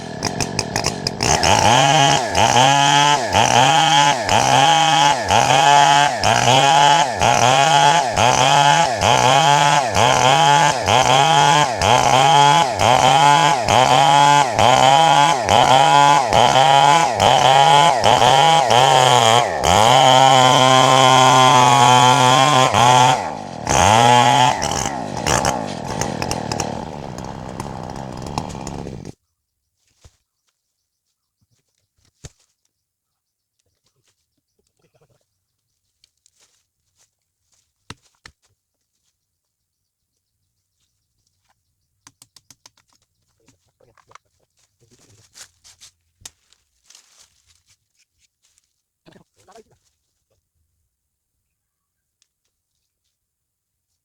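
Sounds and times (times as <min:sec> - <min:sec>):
chainsaw cutting wood: 0:00.0 - 0:29.2.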